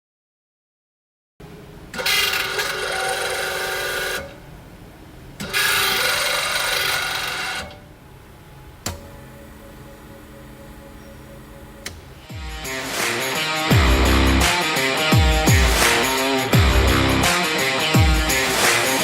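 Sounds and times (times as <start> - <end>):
drilling machine whining: 1.8 - 19.0
sharp click: 8.8 - 9.1.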